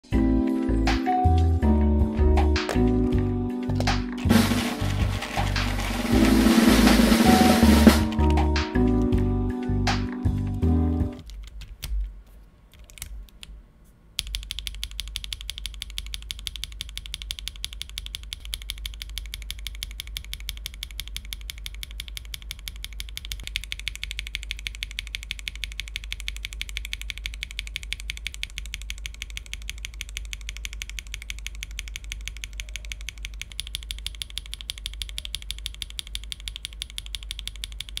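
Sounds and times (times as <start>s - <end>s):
mechanical keyboard key clicks: 11.2s - 12.1s, 12.7s - 13.6s, 14.2s - 38.0s.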